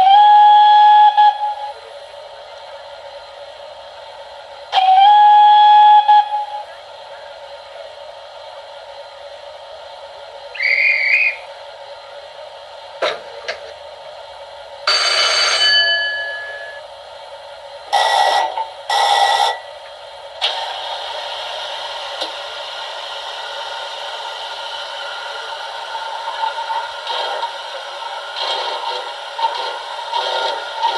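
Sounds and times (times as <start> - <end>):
short whistle blasts: 10.6 - 11.4
steady steam hiss: 16.7 - 30.9.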